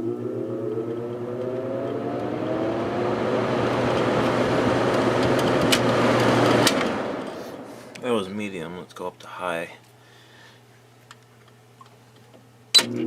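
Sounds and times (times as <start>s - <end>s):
air conditioner fan motor hum: 0.0s - 13.0s
rush of air from fan: 2.3s - 8.0s.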